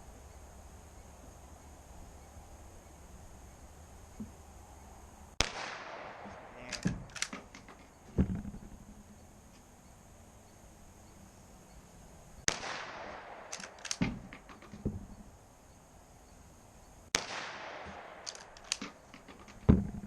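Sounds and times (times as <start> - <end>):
gunshot with echo: 5.4 - 7.5, 12.5 - 14.4, 17.1 - 19.0
quick clicks: 6.6 - 7.9, 13.5 - 14.8, 18.2 - 19.6.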